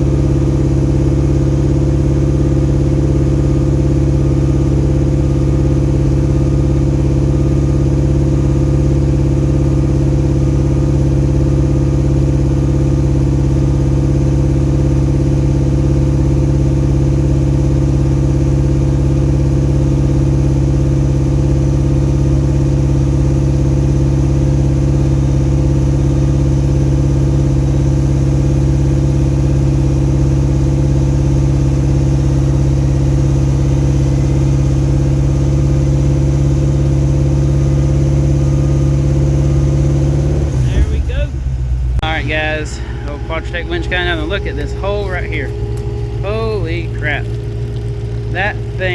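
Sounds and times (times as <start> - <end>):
engine humming steadily: 0.0 - 48.9.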